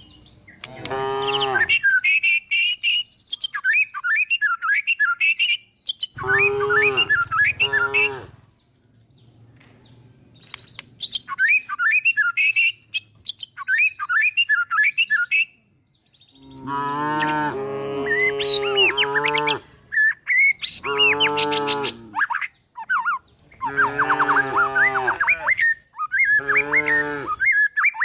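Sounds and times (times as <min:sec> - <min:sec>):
birds chirping: 0:00.0 - 0:28.0
cattle mooing: 0:00.6 - 0:01.8, 0:06.2 - 0:08.4, 0:16.4 - 0:19.7, 0:20.8 - 0:22.2, 0:23.6 - 0:25.6, 0:26.4 - 0:27.4.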